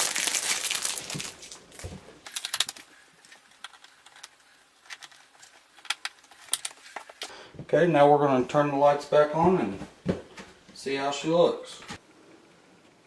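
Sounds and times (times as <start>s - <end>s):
packaging crinkling: 0.0s - 7.3s.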